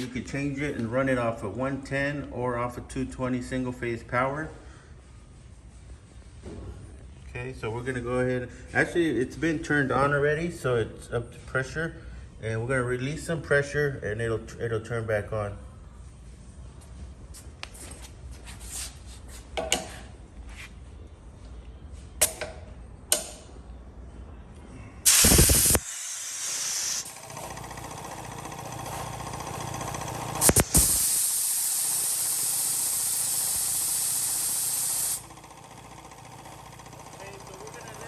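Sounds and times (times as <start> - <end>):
loud blast of air: 25.0 - 27.2, 30.4 - 35.2
compressed air hissing: 25.0 - 27.4, 30.0 - 35.4.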